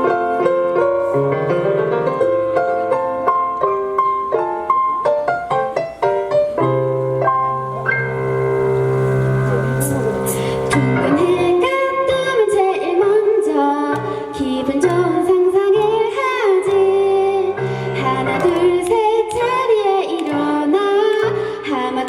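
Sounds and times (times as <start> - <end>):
instrumental accompaniment with bass: 0.0 - 22.0
woman singing pop melody: 9.6 - 22.0.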